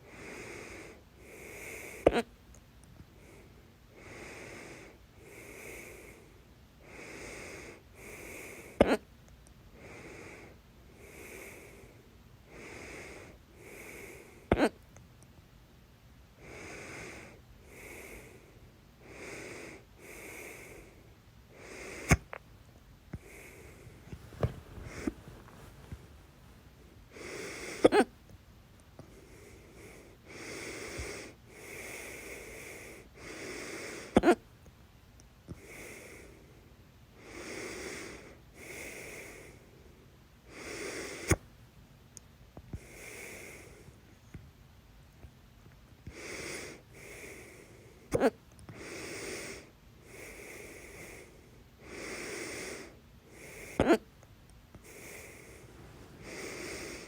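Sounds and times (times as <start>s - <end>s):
person breathing: 0.0s - 2.2s, 3.2s - 8.8s, 9.7s - 14.5s, 16.4s - 22.2s, 23.2s - 26.5s, 27.1s - 28.0s, 29.0s - 34.3s, 35.5s - 41.4s, 42.8s - 44.0s, 46.0s - 54.0s, 54.8s - 57.0s
person hiccuping: 8.8s - 9.0s, 14.5s - 14.8s, 27.8s - 28.1s, 34.2s - 34.4s.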